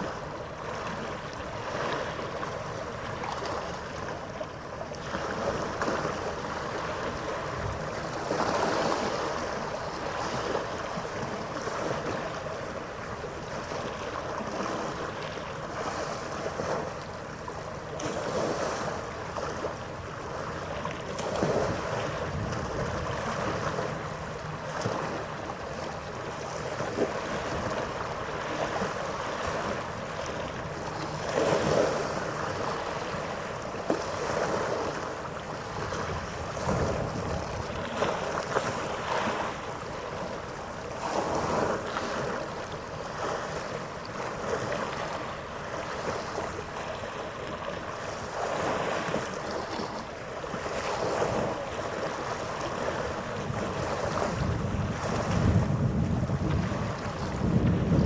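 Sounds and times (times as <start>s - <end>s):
wind on microphone: 5.1s - 12.3s, 21.2s - 25.2s, 34.0s - 39.6s, 52.7s - 58.0s.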